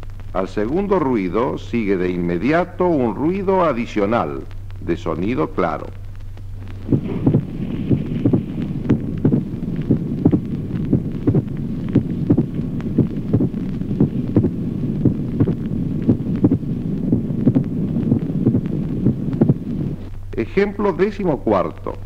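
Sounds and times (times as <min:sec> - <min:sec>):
heartbeat through stethoscope: 0:05.8 - 0:20.2
pericardial knock: 0:06.7 - 0:19.6.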